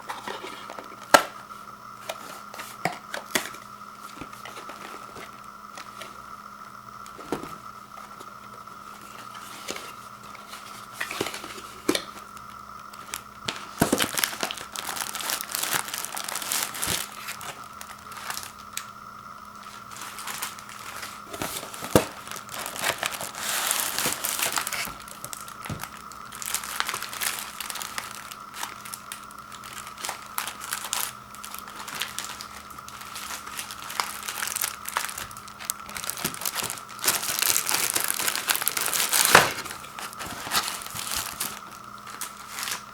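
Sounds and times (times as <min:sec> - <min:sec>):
faint steady hum: 0:00.0 - 0:42.9
packaging crinkling and tearing: 0:08.8 - 0:42.9.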